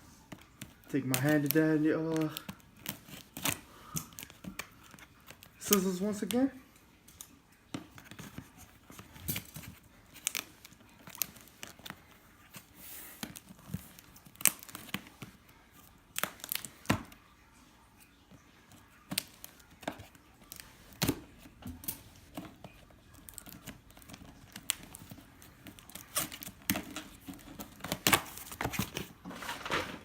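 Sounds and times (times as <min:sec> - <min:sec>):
packaging crinkling: 0:00.2 - 0:06.6, 0:08.0 - 0:17.2, 0:18.6 - 0:30.0
scissors cutting packaging: 0:00.4 - 0:06.4, 0:08.0 - 0:17.1, 0:18.9 - 0:29.2
packaging tearing: 0:01.0 - 0:06.4, 0:08.0 - 0:15.4, 0:16.1 - 0:16.9, 0:23.1 - 0:30.0.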